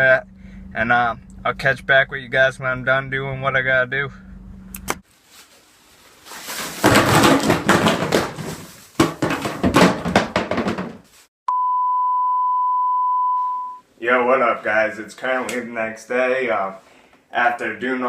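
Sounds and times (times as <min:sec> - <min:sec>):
steady beep tone: 0:11.5 - 0:13.8.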